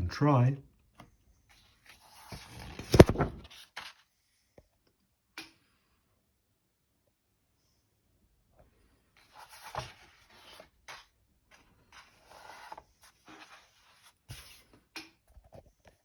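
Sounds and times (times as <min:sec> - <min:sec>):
rustling and scraping handling: 0:01.5 - 0:04.1, 0:09.1 - 0:16.0.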